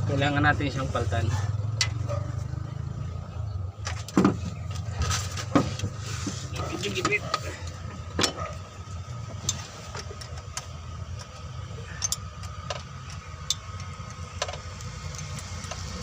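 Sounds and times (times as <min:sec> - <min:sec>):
low mechanical hum: 0:00.8 - 0:16.0
hand tools tapping on metal: 0:09.3 - 0:16.0.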